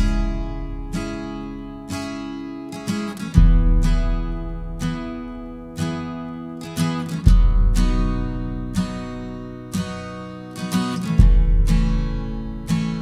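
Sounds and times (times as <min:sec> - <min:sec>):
deep bass note: 0:00.0 - 0:01.1, 0:03.4 - 0:04.7
acoustic guitar strumming chords: 0:00.0 - 0:13.0.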